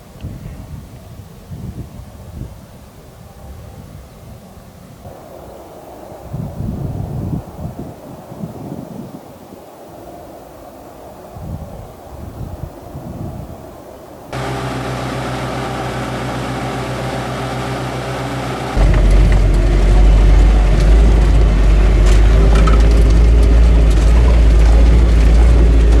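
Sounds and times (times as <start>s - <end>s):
loud deep engine rumble: 14.4s - 26.0s
vehicle engine running: 14.4s - 26.0s.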